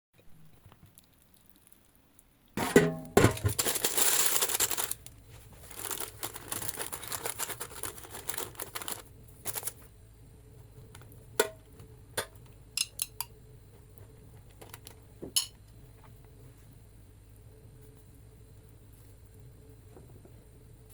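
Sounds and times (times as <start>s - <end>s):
rustling: 2.6s - 9.9s.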